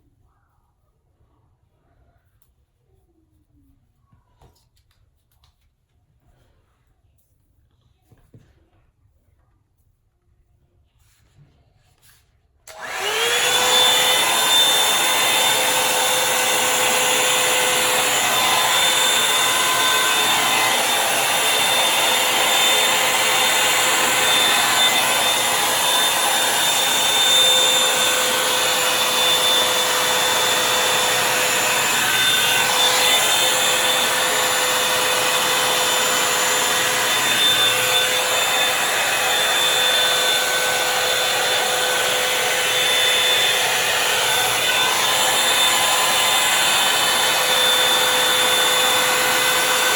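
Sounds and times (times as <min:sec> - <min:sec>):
hair dryer motor whine: 0:12.7 - 0:49.9.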